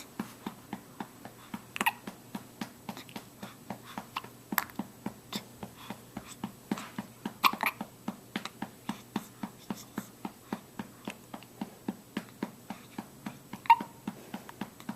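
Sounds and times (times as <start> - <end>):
person hiccuping: 1.8 - 2.1, 7.4 - 7.8, 13.6 - 14.0.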